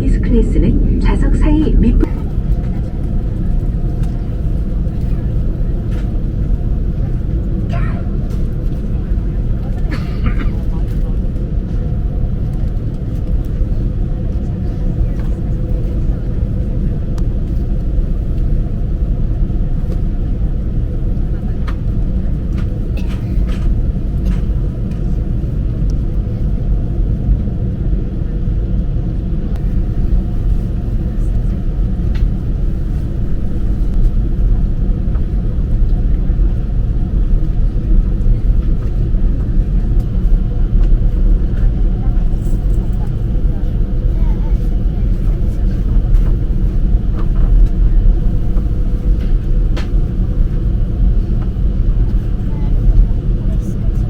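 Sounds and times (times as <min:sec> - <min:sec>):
faint steady hum: 0:00.0 - 0:02.6
airplane cabin rumble: 0:00.0 - 0:54.0.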